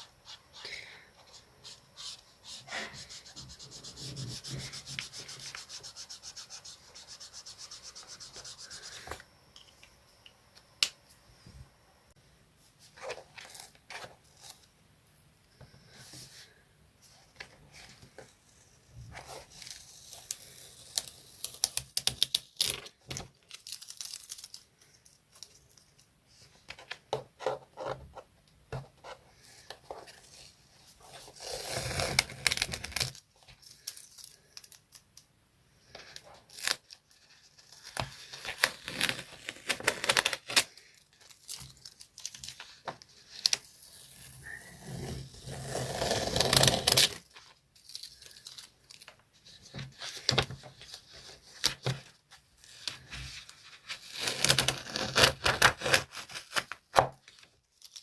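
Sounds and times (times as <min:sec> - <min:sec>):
scratchy drawing strokes on paper: 0:00.0 - 0:09.2.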